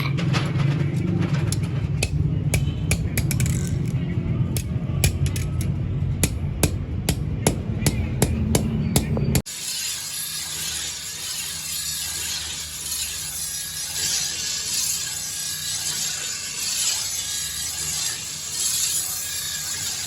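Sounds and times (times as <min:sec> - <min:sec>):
hammer striking metal: 0:01.5 - 0:03.9, 0:04.6 - 0:09.5.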